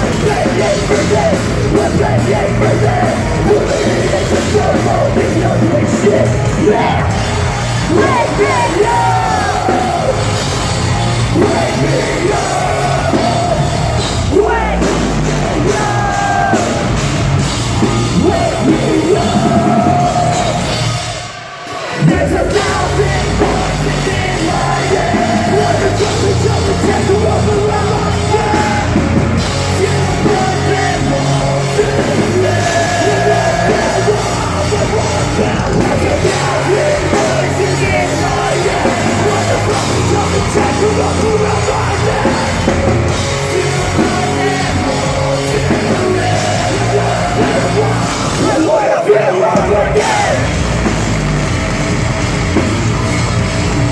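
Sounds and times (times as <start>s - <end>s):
metal band playing live: 0.0s - 53.9s
person singing and screaming: 7.8s - 10.4s.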